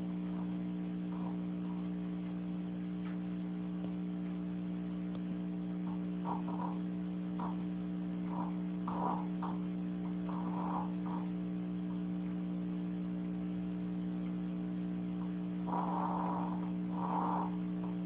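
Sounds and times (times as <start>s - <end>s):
electrical hum: 0.0s - 18.0s
pet snoring: 0.3s - 2.0s, 5.8s - 11.4s, 15.2s - 18.0s.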